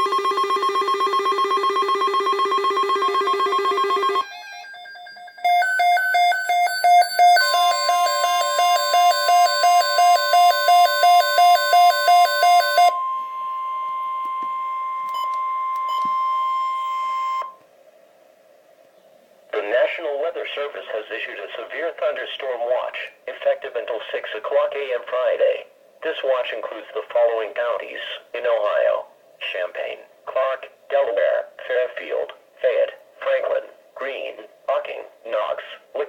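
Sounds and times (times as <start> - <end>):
rapid electronic beeping: 0.0 - 13.0
steady alarm tone: 0.0 - 17.6.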